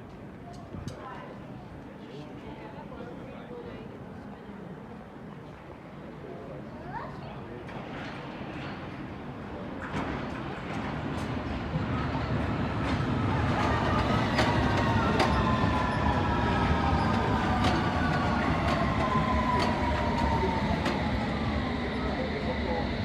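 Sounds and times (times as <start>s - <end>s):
train rumbling: 7.7s - 23.0s.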